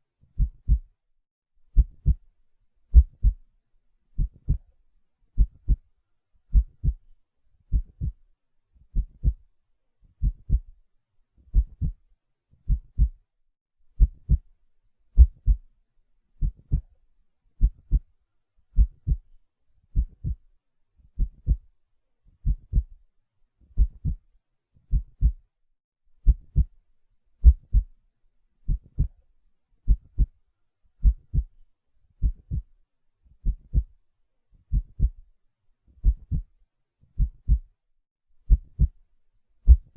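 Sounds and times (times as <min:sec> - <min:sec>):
heartbeat thumping: 0:00.4 - 0:00.9, 0:01.8 - 0:02.2, 0:02.9 - 0:03.4, 0:04.2 - 0:04.6, 0:06.5 - 0:07.0, 0:07.7 - 0:08.2, 0:09.0 - 0:09.4, 0:10.2 - 0:10.6, 0:11.5 - 0:12.0, 0:12.7 - 0:13.2, 0:14.0 - 0:14.4, 0:15.2 - 0:15.6, 0:18.8 - 0:19.2, 0:20.0 - 0:20.4, 0:21.2 - 0:21.6, 0:22.4 - 0:22.9, 0:23.8 - 0:24.2, 0:24.9 - 0:25.4, 0:27.4 - 0:27.9, 0:28.7 - 0:29.1, 0:29.9 - 0:30.3, 0:31.0 - 0:31.5, 0:32.2 - 0:32.6, 0:33.4 - 0:33.9, 0:34.7 - 0:35.2, 0:36.0 - 0:36.4, 0:37.2 - 0:37.7, 0:38.5 - 0:39.0, 0:39.7 - 0:39.9.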